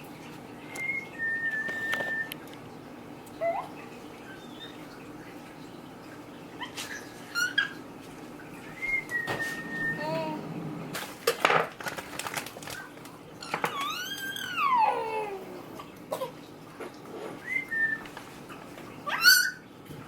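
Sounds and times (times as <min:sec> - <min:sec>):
person whistling: 0:00.8 - 0:02.3, 0:08.8 - 0:10.1
baby vocalizing: 0:09.8 - 0:10.6, 0:13.7 - 0:17.4.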